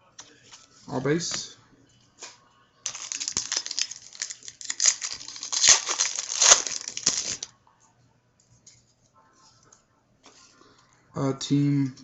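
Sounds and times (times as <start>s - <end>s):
wrapper tearing and crinkling: 2.9s - 7.5s.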